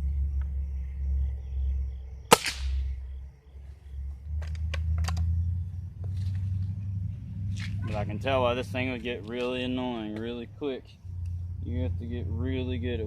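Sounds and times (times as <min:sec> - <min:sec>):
steady low rumble: 0:00.0 - 0:13.0
air rifle shot: 0:02.3 - 0:02.8.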